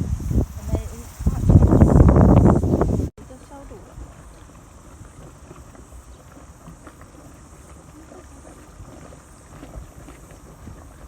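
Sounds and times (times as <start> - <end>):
wind buffeting microphone: 0.0 - 11.0
mud bubbling and plopping: 3.9 - 11.0.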